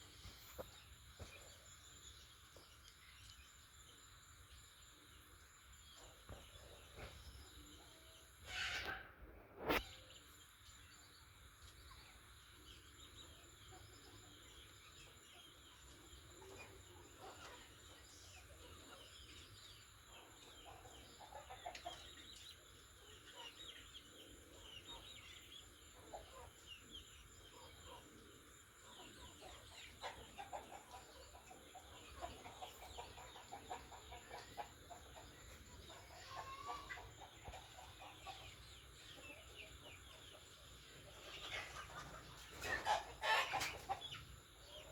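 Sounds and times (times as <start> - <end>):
chickens clucking: 13.2 - 44.9.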